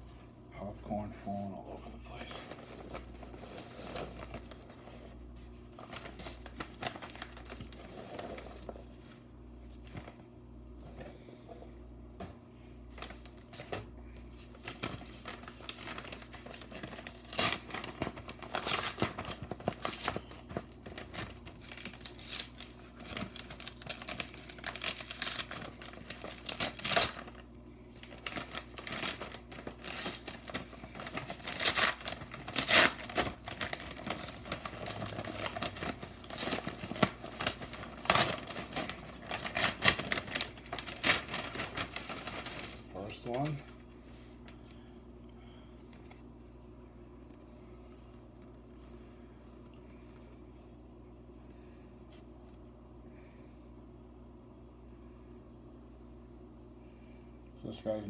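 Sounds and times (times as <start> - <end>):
wrapping tearing: 5.4 - 8.8, 14.4 - 43.6
packing peanuts rustling: 14.4 - 43.6.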